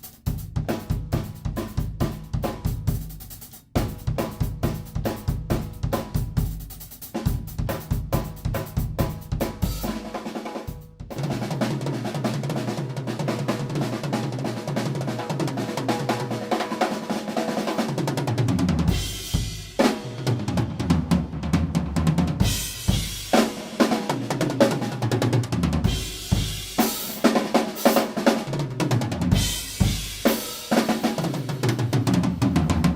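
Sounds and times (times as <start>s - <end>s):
bass drum and snare strokes: 0.0s - 11.7s, 18.5s - 32.9s
fast drum roll: 0.0s - 32.9s.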